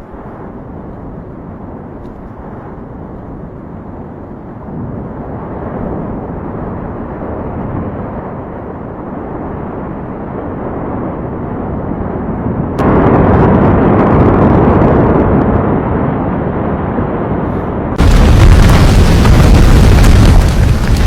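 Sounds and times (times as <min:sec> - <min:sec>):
volcanic eruption rumble: 0:00.0 - 0:21.0
faint crackling: 0:18.0 - 0:21.0.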